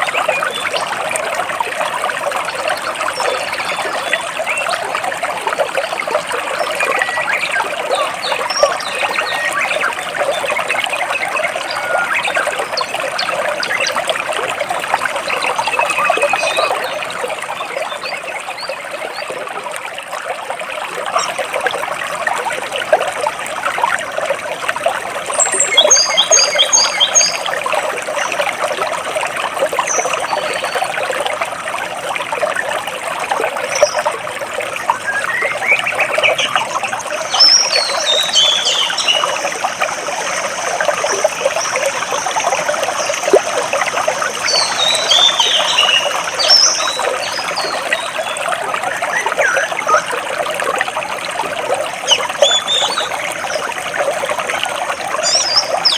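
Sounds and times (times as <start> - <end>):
songbirds singing: 0.0 - 14.4, 15.0 - 19.5, 25.2 - 28.5, 29.4 - 31.0, 33.4 - 50.3, 52.0 - 53.7, 55.2 - 55.9
stream water flowing over rocks: 0.0 - 55.9.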